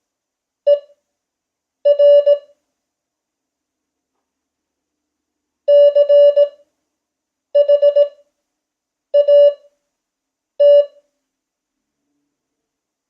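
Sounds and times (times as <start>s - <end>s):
morse code beeps: 1.9s - 2.5s, 5.7s - 6.6s, 7.6s - 8.2s, 9.2s - 9.6s, 10.6s - 10.9s.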